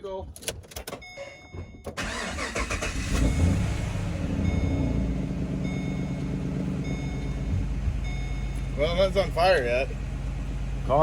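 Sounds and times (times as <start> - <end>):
car engine starting and idling: 0.7 - 11.0
dashboard warning chime: 1.0 - 2.8, 4.2 - 9.7.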